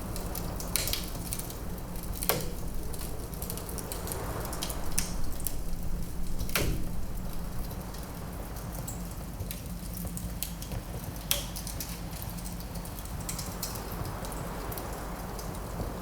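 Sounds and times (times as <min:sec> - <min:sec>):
steady low rumble: 0:00.0 - 0:09.1
fireplace fire crackling: 0:00.0 - 0:16.0.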